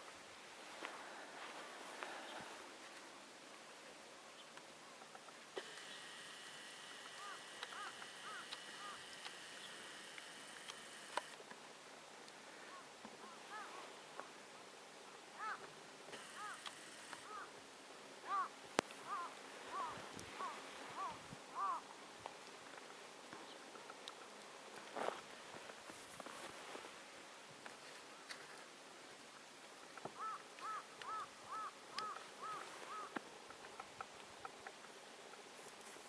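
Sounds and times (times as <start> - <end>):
birds calling: 4.4 - 11.4, 12.7 - 13.8, 15.4 - 17.6, 18.2 - 21.8, 29.8 - 35.4
faint high whine: 5.5 - 22.1.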